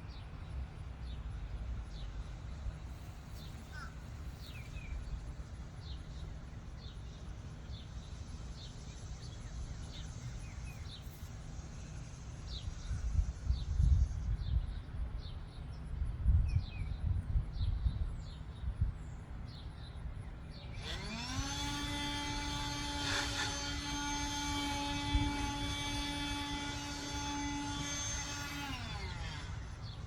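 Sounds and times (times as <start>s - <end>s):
wind rumble on microphone: 12.5s - 20.2s
electronic warning siren: 20.8s - 29.8s.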